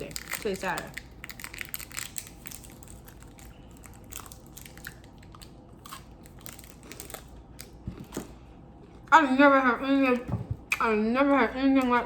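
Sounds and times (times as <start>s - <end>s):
person chewing crunchy chocolate bar: 0.0s - 9.1s.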